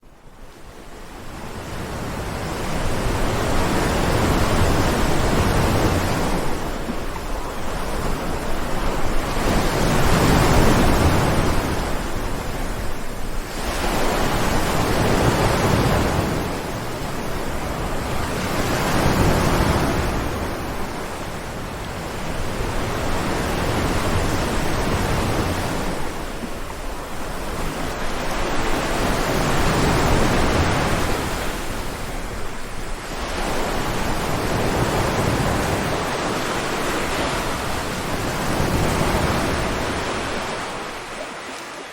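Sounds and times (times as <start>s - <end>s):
ocean waves breaking on shore: 0.1s - 41.9s.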